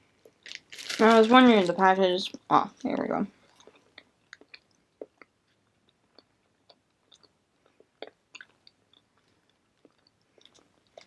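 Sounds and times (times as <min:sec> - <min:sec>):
faint bagel chewing: 0:03.4 - 0:11.0
mouth clicks and smacks: 0:03.5 - 0:11.0.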